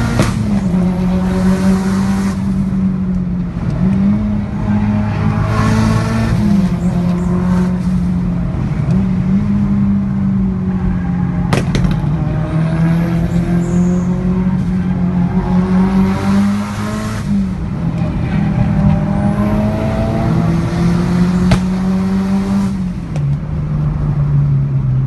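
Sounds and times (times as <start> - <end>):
car engine running under load: 0.0 - 25.0
sharp exhaust pop: 21.4 - 21.8.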